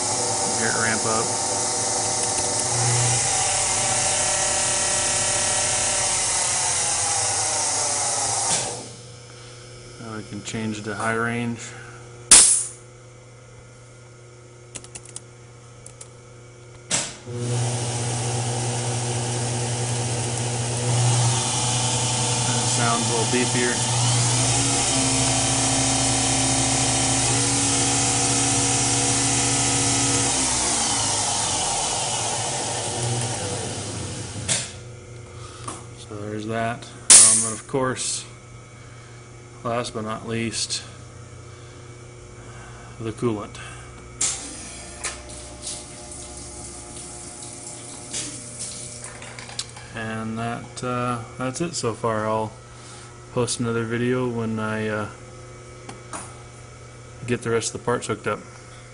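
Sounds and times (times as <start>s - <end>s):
mill spindle whining: 0.0s - 11.0s, 17.2s - 36.4s.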